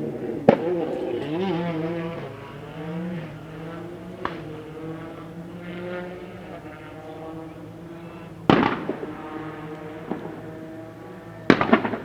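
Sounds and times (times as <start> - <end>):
rally engine idling: 0.0 - 11.3
engine revving: 0.0 - 12.0
backfire pop: 8.5 - 9.1.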